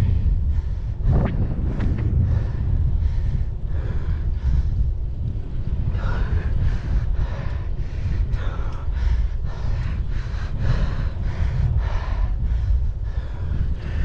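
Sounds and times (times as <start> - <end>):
person breathing hard: 0.0 - 14.0
wind rumble on microphone: 0.0 - 14.0.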